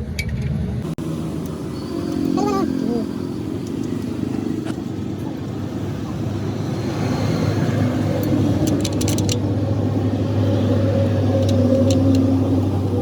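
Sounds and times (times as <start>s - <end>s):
engine running: 0.0s - 13.0s.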